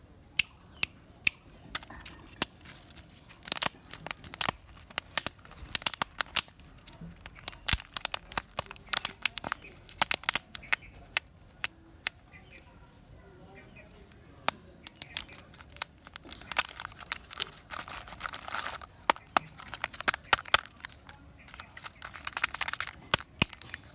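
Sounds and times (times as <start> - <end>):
foil wrapper crinkling and tearing: 1.7 - 11.6, 14.8 - 23.9.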